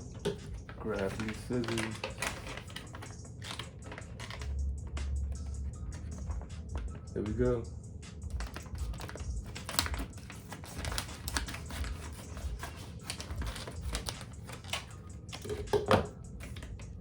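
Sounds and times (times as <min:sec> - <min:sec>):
packaging crackling: 0:00.0 - 0:04.6, 0:08.4 - 0:15.8
scissors cutting packaging: 0:00.0 - 0:06.7, 0:08.4 - 0:16.9.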